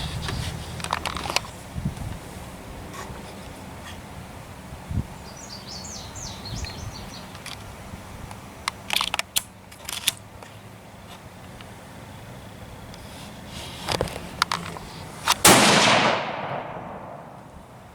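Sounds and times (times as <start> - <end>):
rifle bolt metallic clicks: 8.6 - 10.2.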